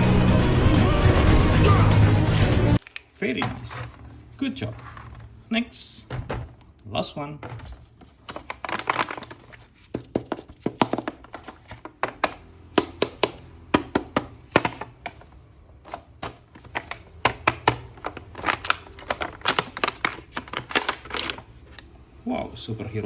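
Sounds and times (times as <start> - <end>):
plastic clicks and knocks: 7.4 - 15.3, 15.9 - 21.8.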